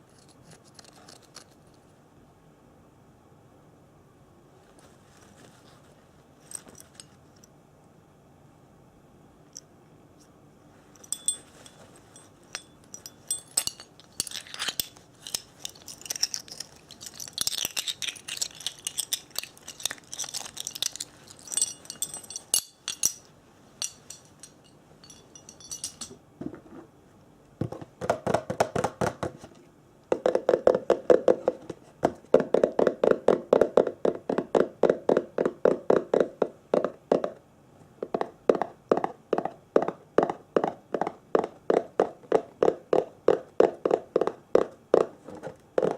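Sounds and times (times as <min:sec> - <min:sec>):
light clinks with ringing tones: 0:11.0 - 0:17.3, 0:20.4 - 0:26.2
crisp crinkling: 0:14.0 - 0:21.9
rapid tapping on hollow object: 0:30.1 - 0:37.4, 0:38.0 - 0:45.2.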